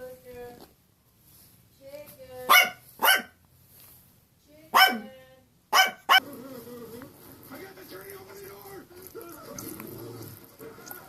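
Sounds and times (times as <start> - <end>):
dog barking: 2.5 - 3.4, 4.7 - 5.1, 5.7 - 6.2.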